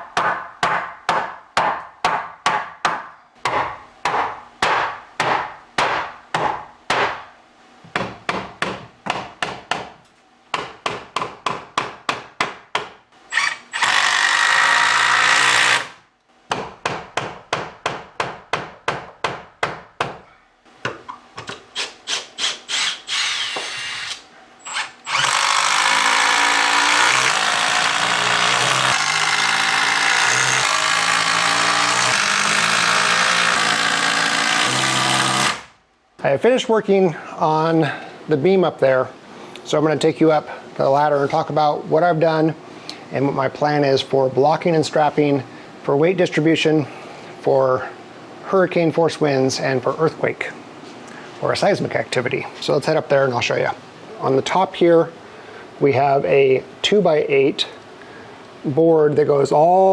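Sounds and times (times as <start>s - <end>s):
sharp knocks on wood: 0.2s - 7.2s, 7.9s - 13.0s, 16.5s - 20.2s
power drill driving screws: 13.3s - 16.0s, 21.8s - 35.7s.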